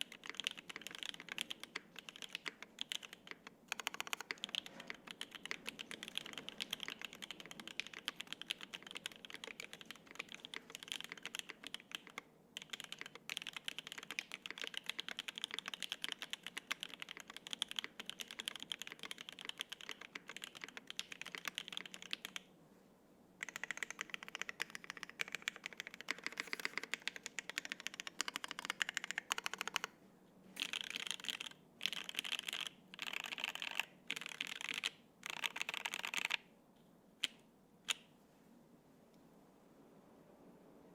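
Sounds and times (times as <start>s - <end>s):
typing on mechanical keyboard: 0.0s - 22.4s, 23.4s - 29.9s, 30.6s - 36.4s.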